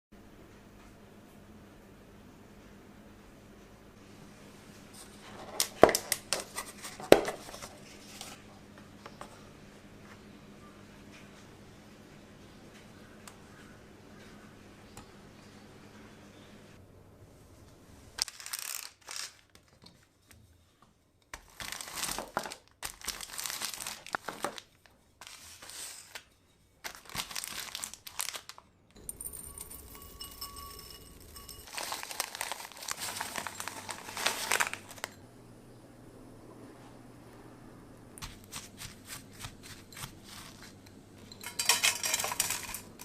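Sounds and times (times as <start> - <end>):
plastic packaging crinkling: 18.2 - 19.7, 21.4 - 28.7, 31.4 - 35.2.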